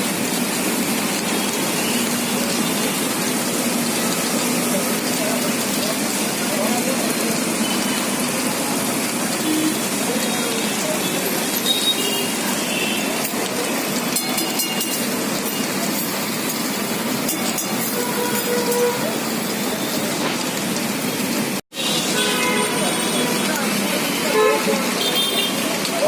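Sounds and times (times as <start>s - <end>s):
heavy rain falling: 0.0s - 26.0s.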